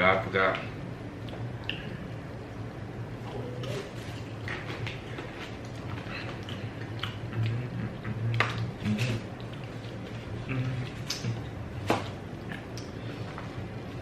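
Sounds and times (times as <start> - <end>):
person chewing: 3.6 - 11.5.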